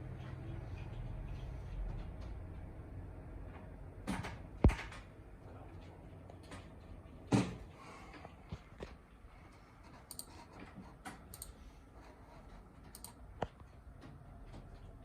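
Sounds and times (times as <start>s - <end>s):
computer hardware clicks and knocks: 4.0s - 5.2s, 9.8s - 11.6s, 12.4s - 15.0s.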